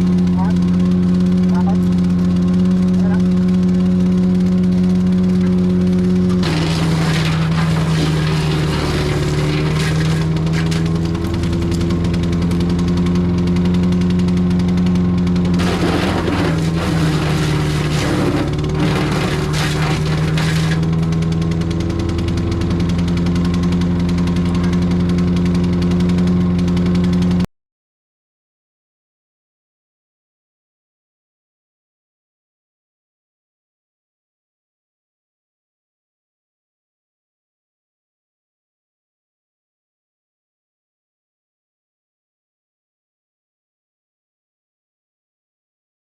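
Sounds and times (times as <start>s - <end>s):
wood chipper running: 0.0s - 27.4s
material crackling through chipper: 6.4s - 12.7s, 15.6s - 21.2s.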